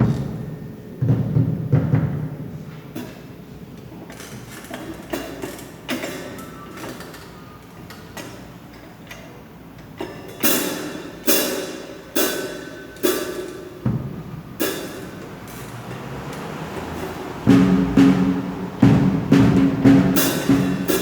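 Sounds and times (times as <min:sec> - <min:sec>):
drum kit single strikes: 0:12.2 - 0:21.0
deep drum thump: 0:13.8 - 0:14.6, 0:16.0 - 0:21.0.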